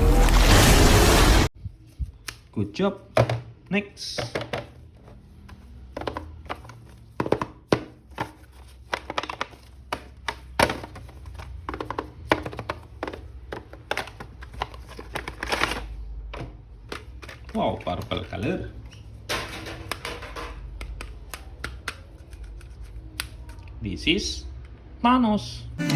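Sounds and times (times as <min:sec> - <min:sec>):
handling toy packaging: 0:04.2 - 0:19.1.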